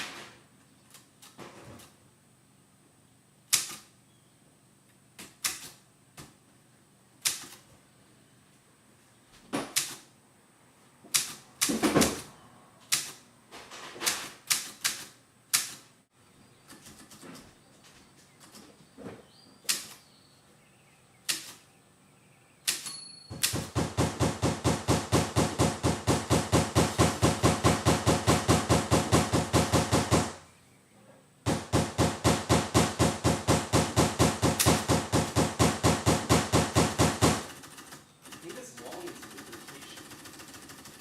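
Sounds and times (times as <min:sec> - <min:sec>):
typewriter clattering: 0:31.6 - 0:41.0.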